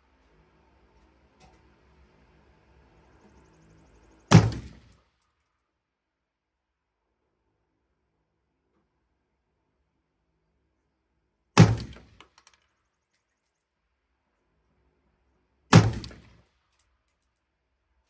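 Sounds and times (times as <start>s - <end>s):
rifle shots: 4.3s - 5.0s, 11.6s - 12.2s, 15.7s - 16.4s.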